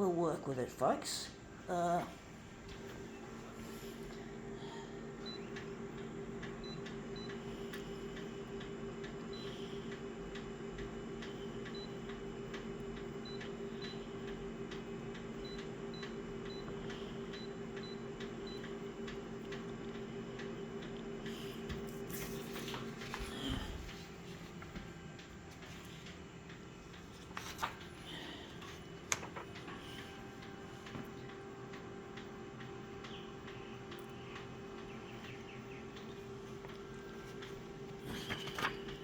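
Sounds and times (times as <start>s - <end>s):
printer two-note hum: 2.5s - 39.0s
printer light ticking: 5.2s - 21.0s, 30.4s - 36.1s.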